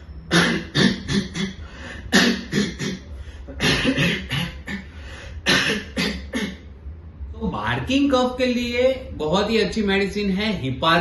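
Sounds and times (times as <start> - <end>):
person coughing harshly: 0.3 - 6.7.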